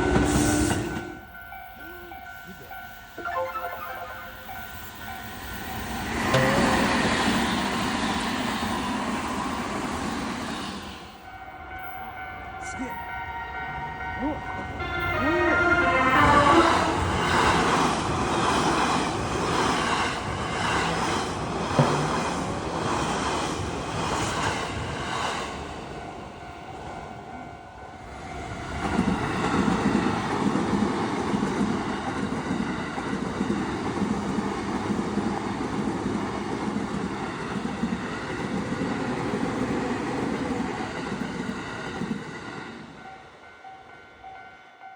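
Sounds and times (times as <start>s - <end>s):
train rumbling past: 0.0s - 44.5s
train clattering over crossing: 4.9s - 10.5s, 14.6s - 27.4s.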